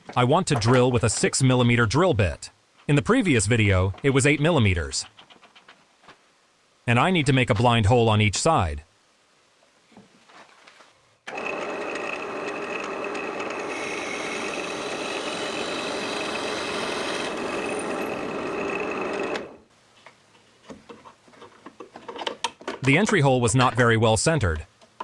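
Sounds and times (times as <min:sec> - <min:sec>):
drill press drilling wood: 0:11.3 - 0:19.6.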